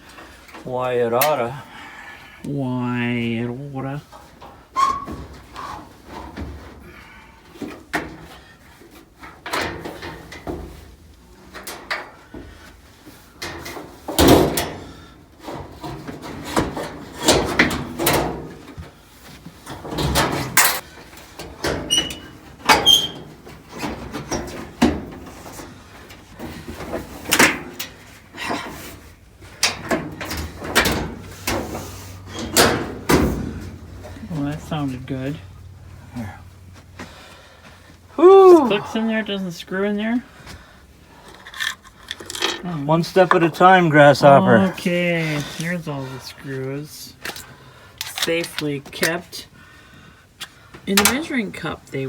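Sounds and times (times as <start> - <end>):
dryer parts knocking and rattling: 4.0 - 38.6, 50.4 - 52.0.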